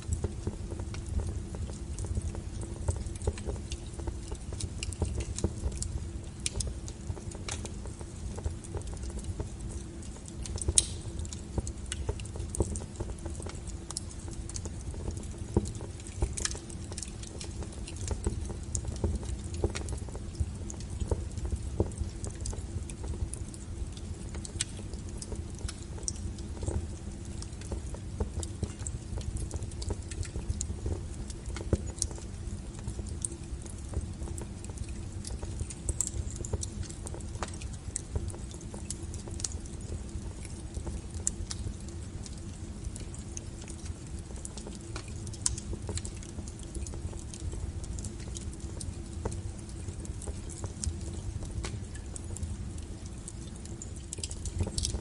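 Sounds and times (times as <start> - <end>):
crackles and pops of burning firewood: 0.0 - 55.0
low fire rumble: 0.0 - 55.0.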